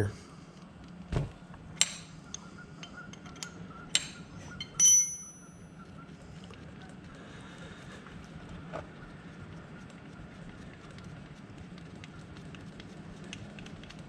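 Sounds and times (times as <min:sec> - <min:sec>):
thump: 0:01.1 - 0:01.4
metal hand tools clinking: 0:03.3 - 0:05.6.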